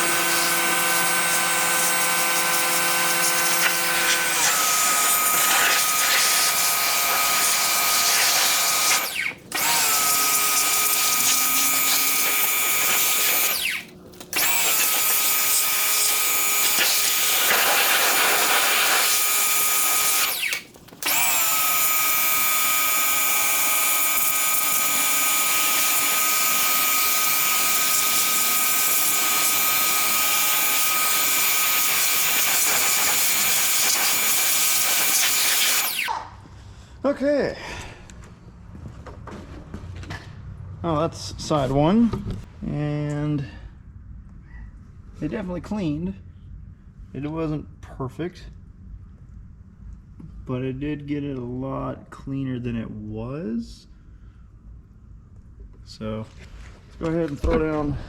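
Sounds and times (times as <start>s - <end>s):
pressure washer pump whining: 0.0s - 36.1s.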